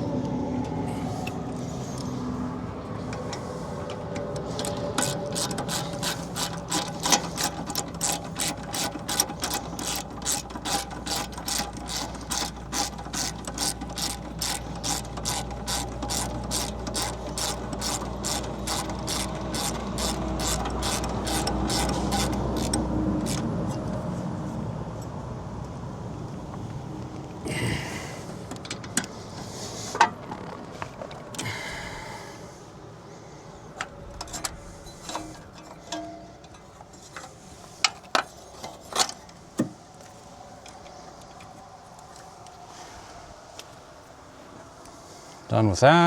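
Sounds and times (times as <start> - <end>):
ratchet wrench clicking: 4.5 - 23.5.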